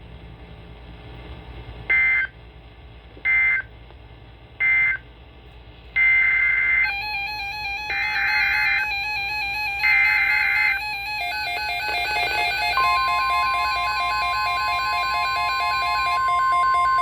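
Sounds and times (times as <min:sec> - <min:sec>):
steady alarm tone: 0:06.0 - 0:17.0.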